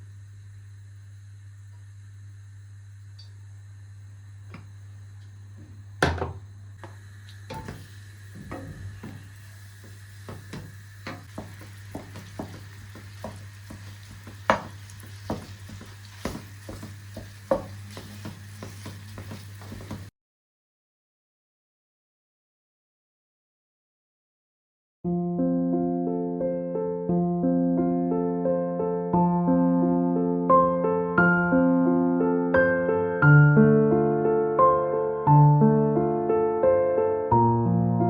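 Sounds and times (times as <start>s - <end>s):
steady low hum: 0.0s - 20.1s
utensil stirring in a pot: 7.3s - 20.1s.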